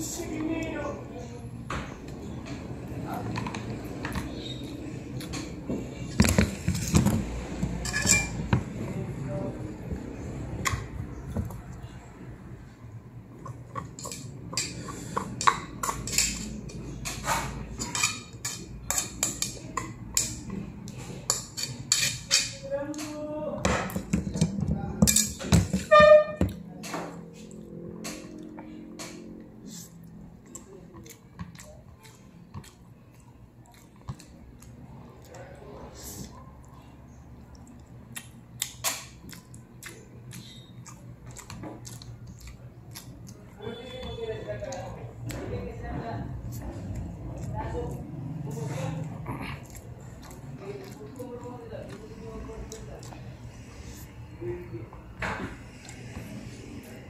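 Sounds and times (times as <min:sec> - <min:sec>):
spoon and fork scraping a plate: 0:07.8 - 0:08.4
person chewing noodles: 0:29.3 - 0:35.4, 0:36.0 - 0:44.0, 0:46.4 - 0:54.4, 0:55.6 - 0:56.2.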